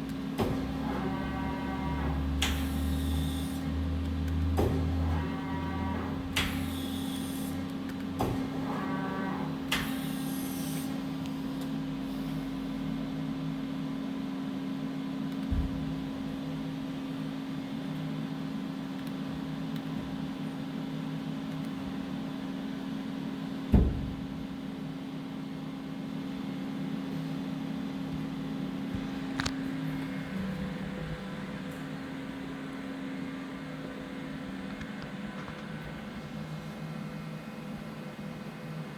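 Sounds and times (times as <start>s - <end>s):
machine humming: 0.0s - 10.8s
thump: 23.7s - 24.2s.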